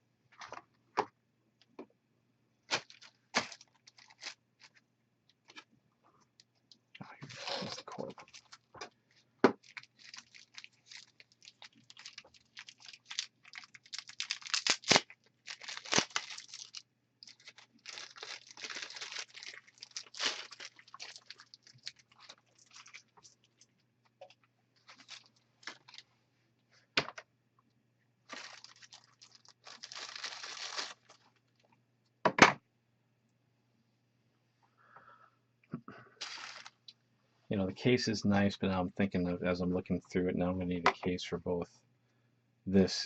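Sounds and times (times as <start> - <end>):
packaging crinkling: 2.7 - 4.8, 7.3 - 8.8, 9.6 - 23.7, 24.8 - 26.0, 28.3 - 31.4, 36.2 - 36.9.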